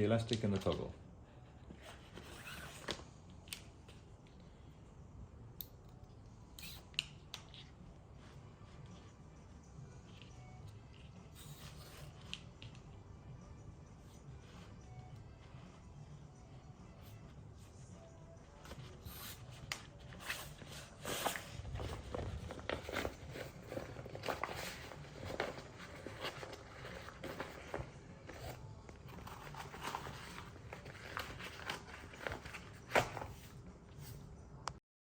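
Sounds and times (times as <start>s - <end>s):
fabric pouch rustling: 1.6s - 3.0s, 18.6s - 33.4s.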